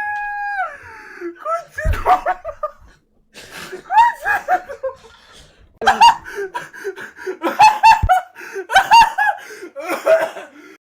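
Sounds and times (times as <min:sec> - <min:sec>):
person cackling laugh: 0:01.4 - 0:02.9, 0:03.6 - 0:05.0, 0:05.8 - 0:10.2
low thump: 0:01.8 - 0:02.6.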